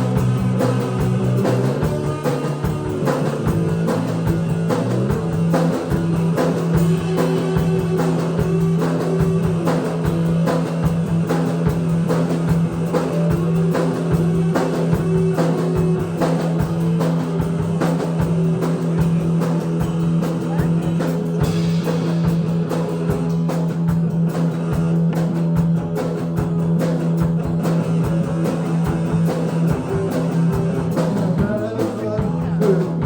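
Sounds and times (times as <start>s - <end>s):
bass guitar: 0.0s - 33.0s
drum kit beat: 0.0s - 33.0s
electric guitar: 0.0s - 33.0s.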